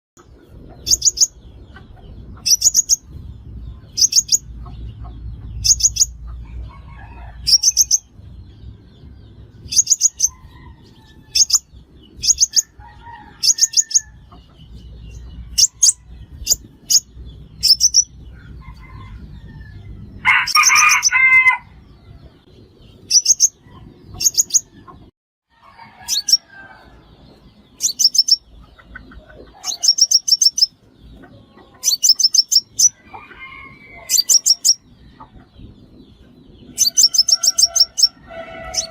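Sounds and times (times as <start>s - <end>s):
rooster crowing: 6.4s - 7.9s, 10.1s - 11.6s, 12.5s - 14.3s, 18.3s - 21.8s, 25.5s - 27.0s, 32.9s - 34.8s, 36.8s - 38.9s
high-pitched bird trills: 27.8s - 28.5s, 31.8s - 33.0s, 34.0s - 34.9s, 36.7s - 38.9s.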